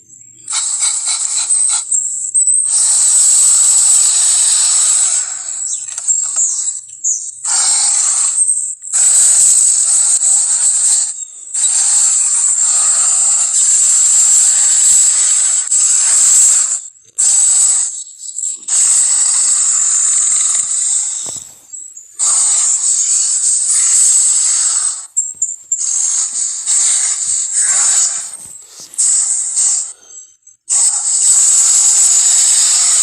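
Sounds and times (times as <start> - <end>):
monster hissing roars: 22.2 - 25.1.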